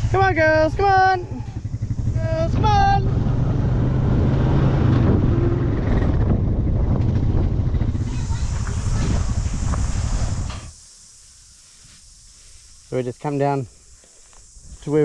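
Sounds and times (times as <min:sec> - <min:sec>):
farm vehicle engine running: 0:00.0 - 0:10.6
wind buffeting microphone: 0:00.4 - 0:10.8
hiss: 0:07.9 - 0:15.0.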